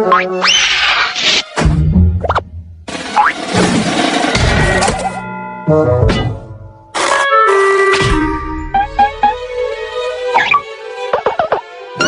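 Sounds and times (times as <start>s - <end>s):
cartoon background music: 0.0s - 6.4s, 7.0s - 12.0s
comic sound effects: 8.8s - 9.4s.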